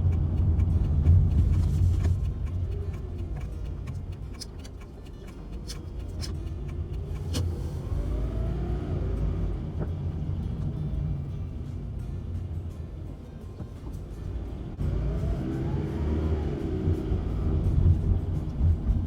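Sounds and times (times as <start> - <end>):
sharp clicks: 0.0 - 7.6
van engine and road rumble: 0.0 - 19.0.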